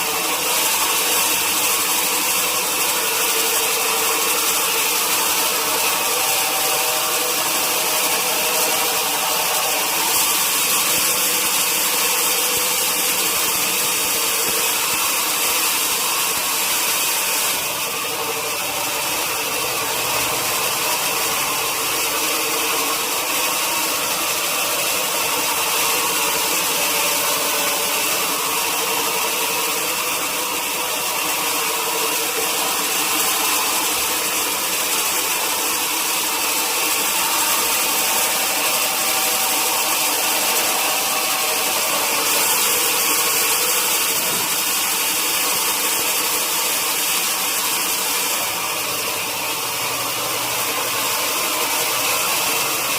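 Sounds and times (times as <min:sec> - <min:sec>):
sawmill machinery running: 0:00.0 - 0:52.9.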